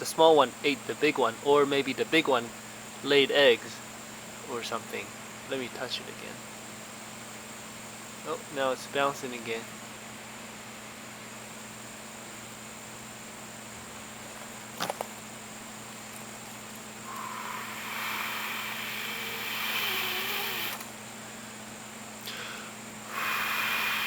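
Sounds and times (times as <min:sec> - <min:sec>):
steady low hum: 0:00.0 - 0:24.0
person blowing air: 0:17.0 - 0:20.8, 0:22.2 - 0:24.0.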